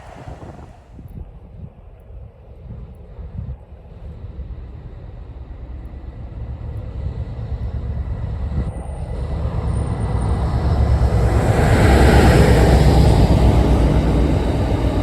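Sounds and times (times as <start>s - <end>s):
train rumbling: 0.0s - 0.9s, 8.4s - 15.0s.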